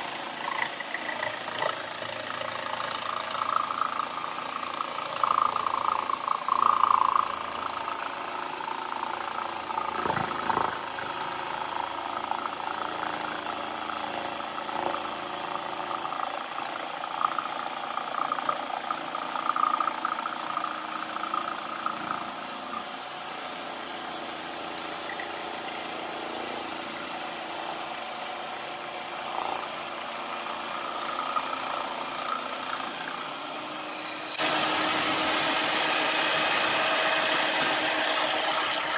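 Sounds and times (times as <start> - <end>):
jigsaw cutting wood: 0.0 - 38.9.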